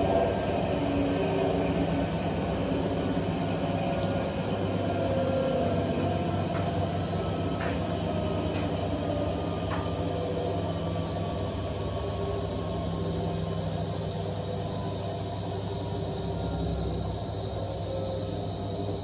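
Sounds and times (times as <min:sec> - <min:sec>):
washing machine motor hum: 0:00.0 - 0:19.0.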